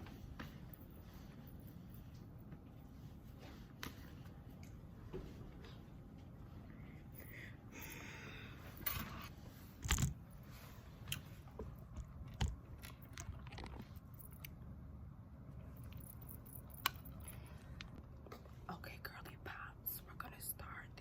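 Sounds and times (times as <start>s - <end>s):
objects being handled: 8.8s - 14.5s.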